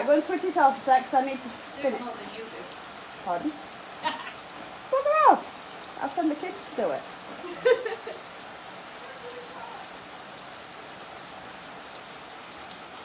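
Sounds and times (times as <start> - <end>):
water pattering on plants: 0.0 - 10.1.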